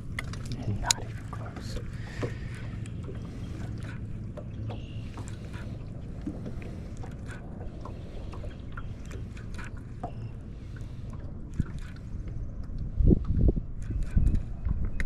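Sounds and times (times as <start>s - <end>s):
small irregular clicks: 0.0s - 1.0s
steady low rumble: 0.0s - 15.0s
water lapping against hull: 0.0s - 15.0s.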